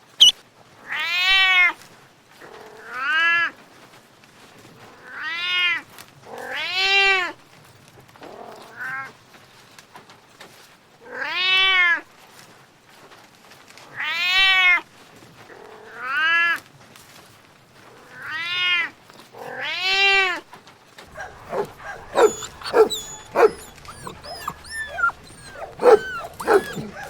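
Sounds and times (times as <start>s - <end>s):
cat meowing: 21.2s - 27.0s
short sharp yelps: 21.2s - 27.0s.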